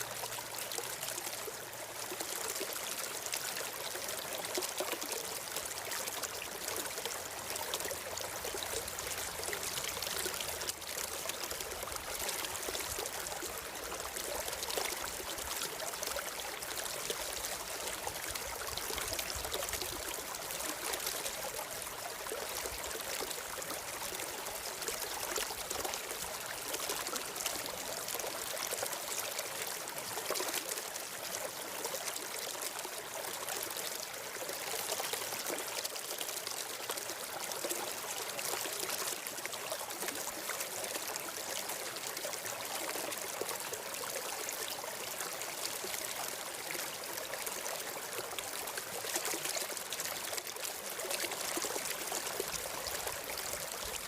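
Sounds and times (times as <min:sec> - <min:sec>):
stream water flowing: 0:00.0 - 0:54.0.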